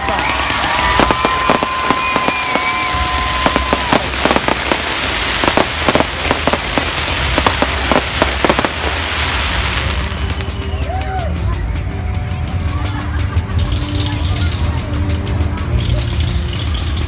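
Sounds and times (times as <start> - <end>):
steady whistling tone: 0.0 - 11.3
fireworks crackling and popping: 0.0 - 17.0.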